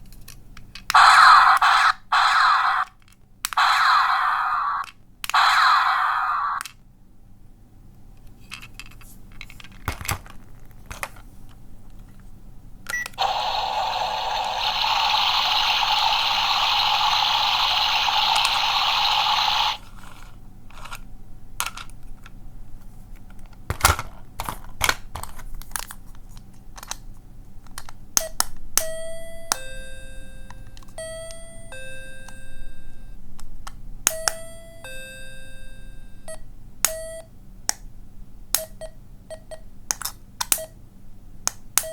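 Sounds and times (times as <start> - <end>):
hissing electronic sound effect: 1.0 - 2.9, 3.6 - 6.6, 13.2 - 19.8.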